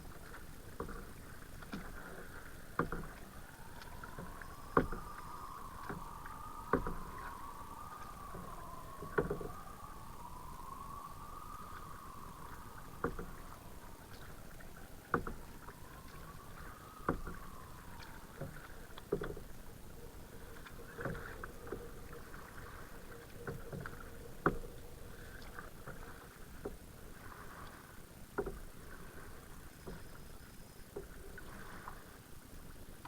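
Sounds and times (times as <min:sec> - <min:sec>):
paddle knock and splash: 0:00.0 - 0:33.0
steady water noise: 0:00.0 - 0:33.0
faint rising and falling tone: 0:03.0 - 0:24.4.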